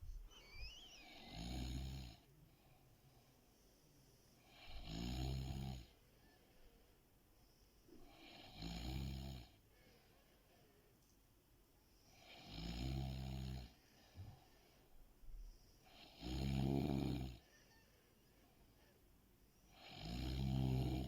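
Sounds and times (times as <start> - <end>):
person snoring: 1.0 - 2.3, 4.5 - 5.9, 16.0 - 17.4, 19.8 - 21.0.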